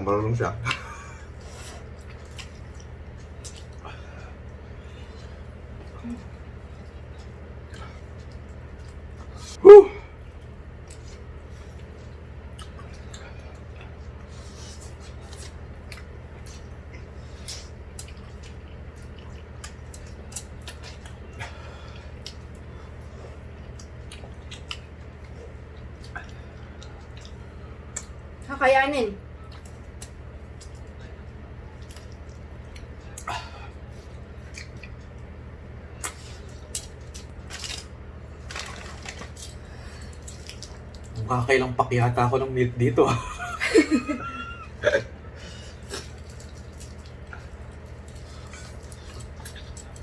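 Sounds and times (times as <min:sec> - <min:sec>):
steady low hum: 0:00.0 - 0:50.0
chewing and slurping: 0:01.3 - 0:09.6, 0:10.2 - 0:28.1, 0:45.7 - 0:50.0.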